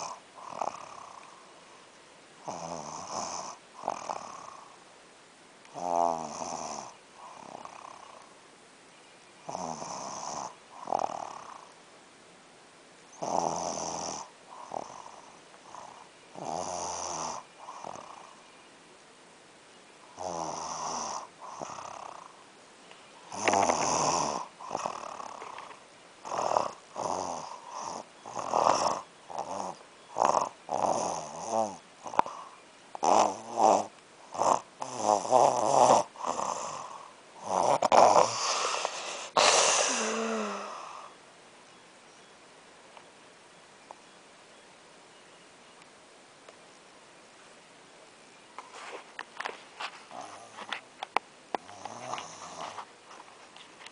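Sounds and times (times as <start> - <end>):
person snoring: 0.0 - 1.3, 2.4 - 4.8, 5.7 - 8.2, 9.5 - 11.7, 13.2 - 18.2, 20.2 - 22.3, 23.3 - 41.2, 50.1 - 50.7, 51.6 - 52.9.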